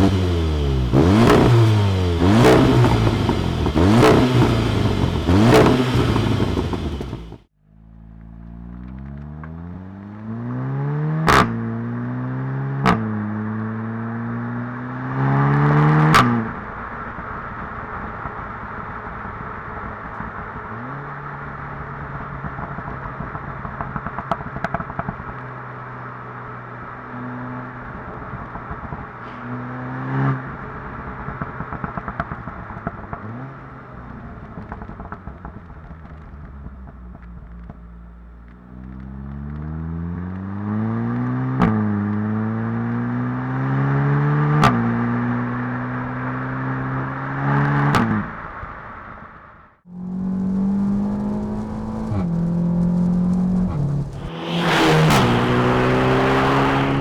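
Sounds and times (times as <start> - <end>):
exhaust bang: 0.0 - 7.5, 27.7 - 38.9, 49.9 - 57.0
exhaust crackles and pops: 0.0 - 10.3, 16.2 - 40.5, 47.9 - 57.0
car engine accelerating: 0.0 - 47.9, 49.9 - 57.0.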